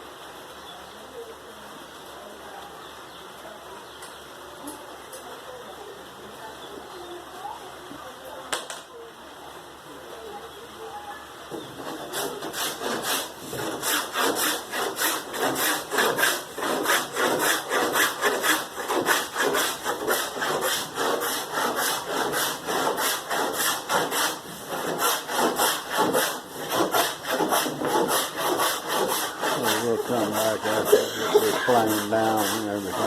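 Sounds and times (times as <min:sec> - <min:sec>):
hand tool working wood: 0:11.5 - 0:33.0.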